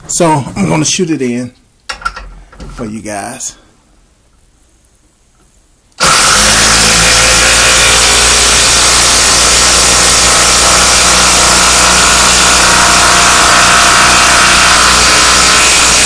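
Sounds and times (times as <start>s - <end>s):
impact driver hammering: 6.0s - 16.0s.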